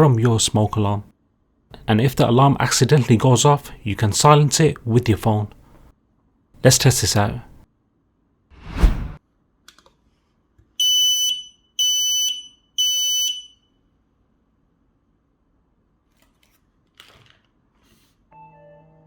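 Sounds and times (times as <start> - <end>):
smoke alarm beeps: 10.8 - 13.8.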